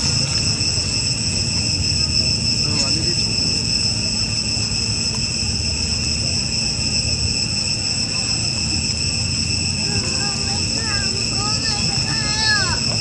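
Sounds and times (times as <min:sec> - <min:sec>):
insects droning: 0:00.0 - 0:13.0.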